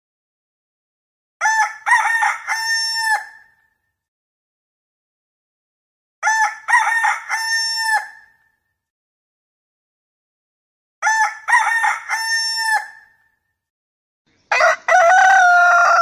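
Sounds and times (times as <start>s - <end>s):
rooster crowing: 1.4s - 3.3s, 6.2s - 8.0s, 11.0s - 12.9s, 14.5s - 16.0s.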